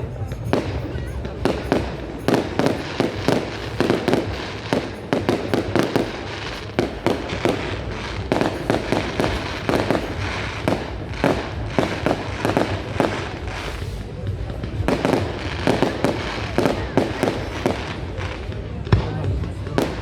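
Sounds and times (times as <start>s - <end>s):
fireworks bangs and pops: 0.0s - 20.0s
fireworks rumble: 0.0s - 20.0s.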